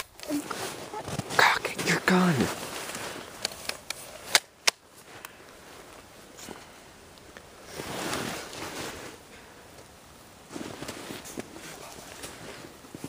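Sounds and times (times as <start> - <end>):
soft rustling: 0.0 - 4.3, 4.9 - 13.0
airsoft gun cocking clicks: 3.4 - 4.8.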